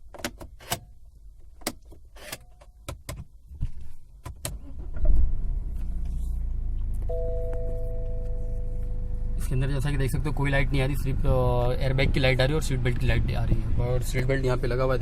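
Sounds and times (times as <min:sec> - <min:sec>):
car engine starting and idling: 0:04.2 - 0:15.0
two-note car warning chime: 0:07.1 - 0:09.2.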